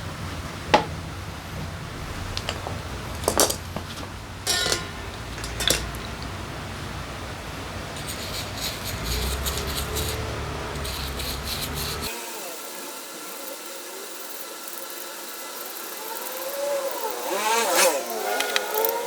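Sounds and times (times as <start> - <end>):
low steady hum: 0.0 - 12.1
metal parts clinking: 4.4 - 6.3.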